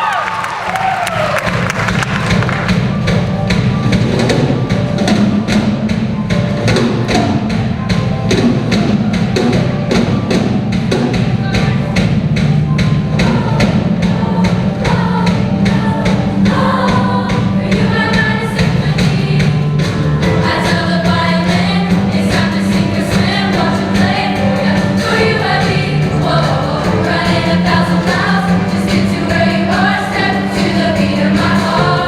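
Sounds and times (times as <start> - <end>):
steady drumbeat: 0.5 - 32.0
live band music: 1.3 - 32.0
sustained bass: 7.1 - 32.0.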